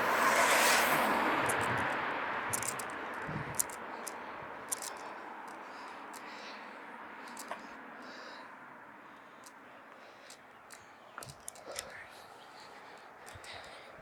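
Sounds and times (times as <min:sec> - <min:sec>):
vehicle passing: 0:00.0 - 0:11.8
light clicks and ticks: 0:01.4 - 0:06.6, 0:07.2 - 0:07.8, 0:09.2 - 0:14.0.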